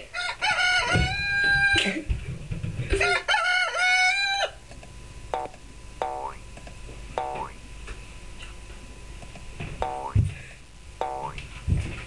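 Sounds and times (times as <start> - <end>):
rooster crowing: 0.0 - 1.9, 3.0 - 4.6
springy boing effects: 5.4 - 6.4, 7.2 - 7.6, 9.8 - 10.2, 11.0 - 11.4.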